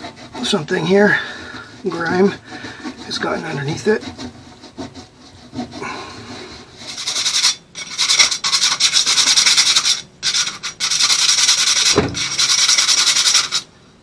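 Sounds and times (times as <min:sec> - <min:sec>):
dull knock: 0:12.0 - 0:12.2.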